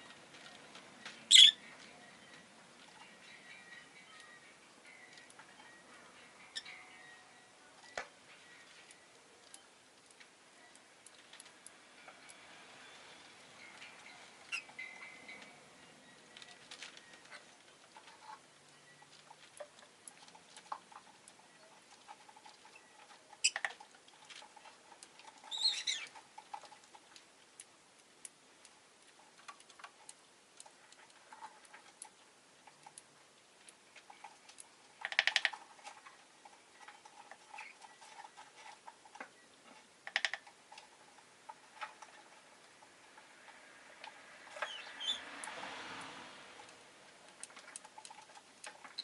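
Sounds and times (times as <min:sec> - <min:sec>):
lovebird chirps: 0:01.2 - 0:02.5, 0:03.2 - 0:09.7, 0:12.8 - 0:17.4, 0:25.4 - 0:26.2, 0:44.6 - 0:45.3
soft ticking and tapping: 0:16.3 - 0:44.8.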